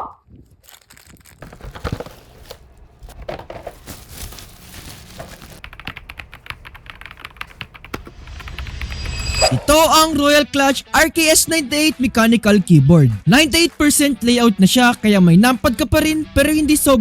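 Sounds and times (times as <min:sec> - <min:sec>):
crinkling and rustling handling: 0:00.3 - 0:08.7
mechanical keyboard keystrokes: 0:05.6 - 0:09.6.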